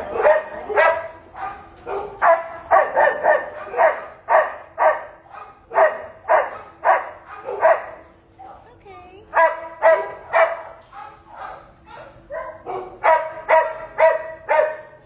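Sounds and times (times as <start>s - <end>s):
dogs barking: 0.0s - 8.6s, 9.3s - 15.0s.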